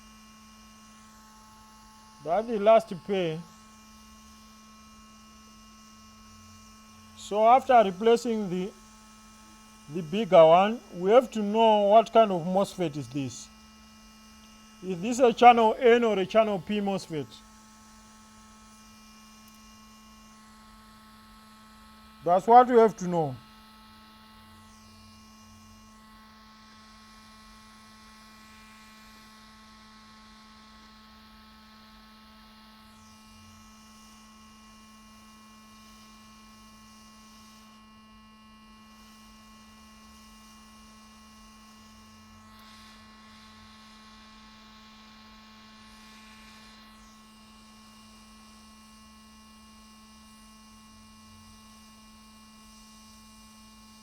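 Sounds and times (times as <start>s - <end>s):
faint electrical hum: 1.1s - 4.5s, 5.8s - 23.6s.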